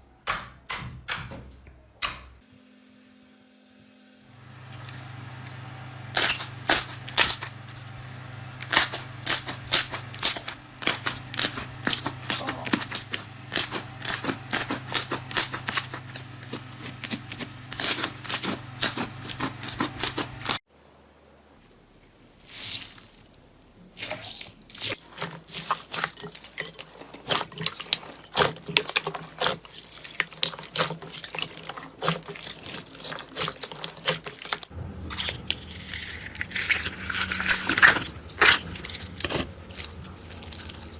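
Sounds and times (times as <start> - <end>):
low steady hum: 1.6 - 22.3, 26.6 - 40.9.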